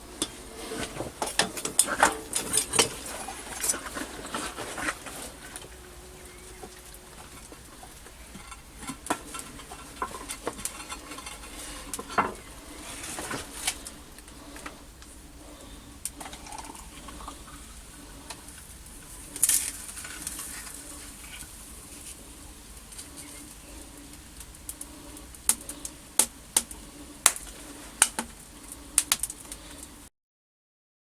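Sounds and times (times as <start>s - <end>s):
faint steady background noise: 0.0s - 30.1s
metal tools clinking and scraping: 0.2s - 14.0s.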